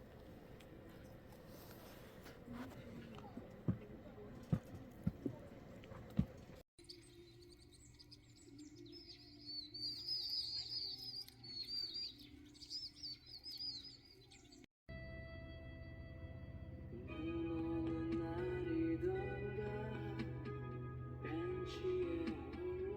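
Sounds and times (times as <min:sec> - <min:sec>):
small birds chirping: 0:03.1 - 0:14.7.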